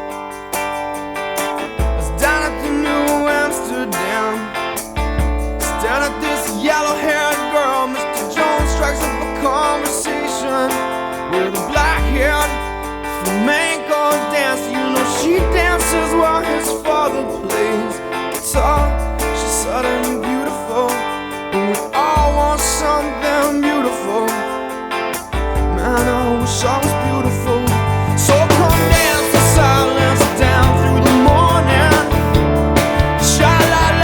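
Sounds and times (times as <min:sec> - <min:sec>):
acoustic guitar strumming: 0:00.0 - 0:34.0
person singing wordless lines: 0:01.4 - 0:34.0
deep bass notes: 0:25.4 - 0:34.0.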